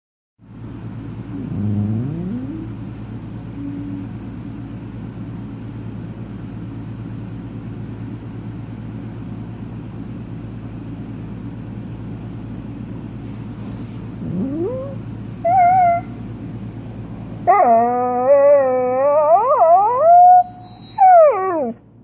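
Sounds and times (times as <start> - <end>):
cat purring: 1.3 - 2.8
cat trill: 1.4 - 2.8.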